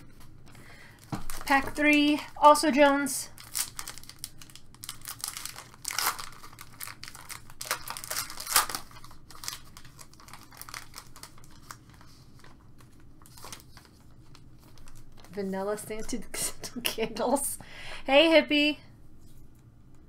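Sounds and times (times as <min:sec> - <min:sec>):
wrapper tearing and crinkling: 0:03.3 - 0:15.4.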